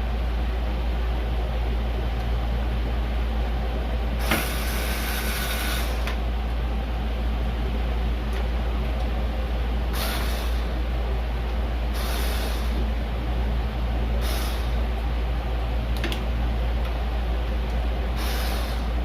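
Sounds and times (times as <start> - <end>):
low mechanical hum: 0.0 - 19.0.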